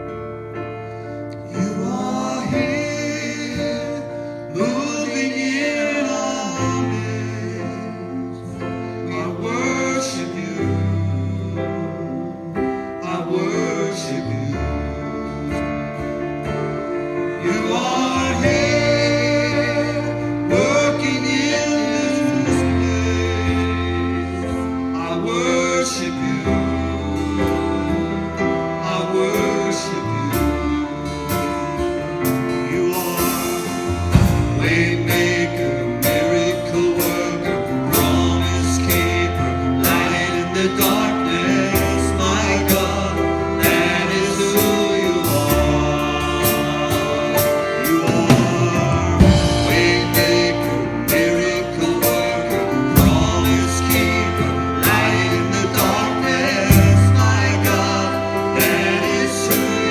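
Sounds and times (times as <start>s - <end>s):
band with guitar and bass: 0.0s - 59.9s
person singing: 1.0s - 59.9s
drums: 31.3s - 39.1s, 44.6s - 59.8s.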